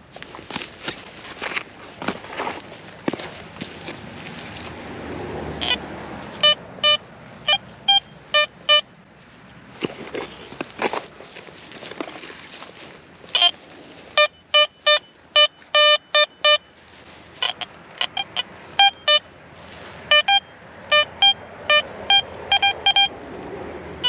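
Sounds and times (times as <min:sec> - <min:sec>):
metal detector beeps: 0:05.6 - 0:05.8, 0:06.4 - 0:08.9, 0:13.3 - 0:13.6, 0:14.2 - 0:16.8, 0:17.4 - 0:19.3, 0:20.1 - 0:23.1.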